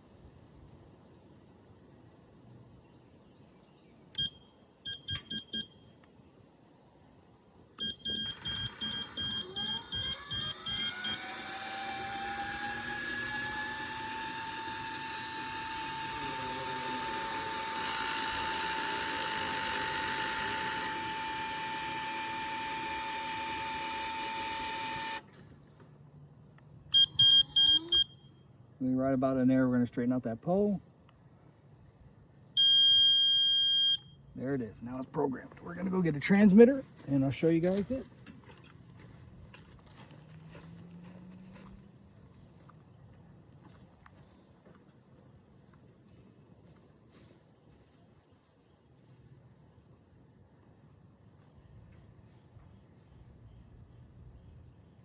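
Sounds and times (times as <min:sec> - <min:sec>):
control board beeping: 0:04.2 - 0:05.7, 0:07.8 - 0:11.3, 0:26.9 - 0:28.1
motor whining: 0:07.8 - 0:25.3.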